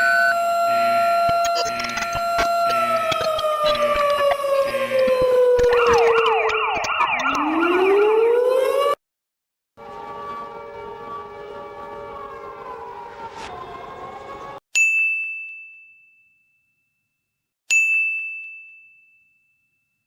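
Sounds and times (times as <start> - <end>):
multi-tone alarm siren winding down: 0.0 - 9.0.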